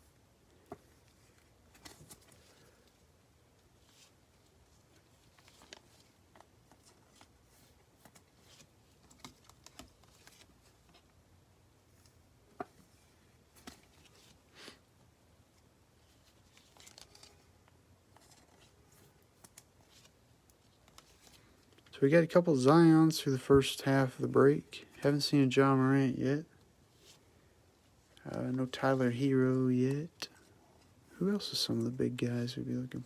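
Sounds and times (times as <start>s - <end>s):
trading cards rustling and clicking: 0.5s - 3.0s, 3.7s - 11.1s, 16.0s - 21.9s.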